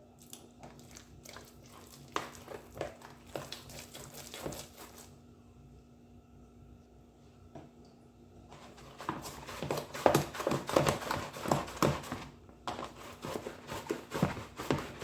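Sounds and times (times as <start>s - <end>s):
spoon slapping dough in a bowl: 0.2s - 5.2s, 8.6s - 15.0s.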